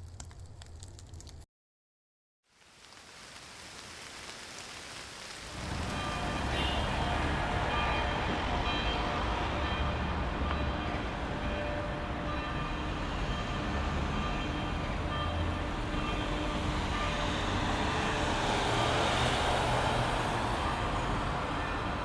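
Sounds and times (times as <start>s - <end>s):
train rumbling on track: 5.5s - 22.0s.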